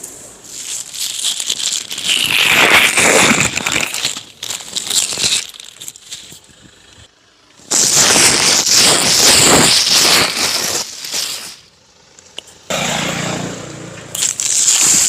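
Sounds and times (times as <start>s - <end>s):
plastic sheeting crinkling: 0.4s - 6.7s, 7.7s - 11.6s, 14.2s - 15.0s.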